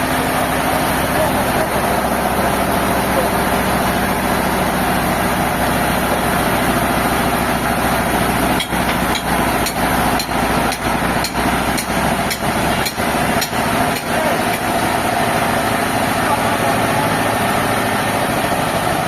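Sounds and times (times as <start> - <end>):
sawmill machinery running: 0.0 - 19.0
sharp repeating knock: 8.6 - 14.6.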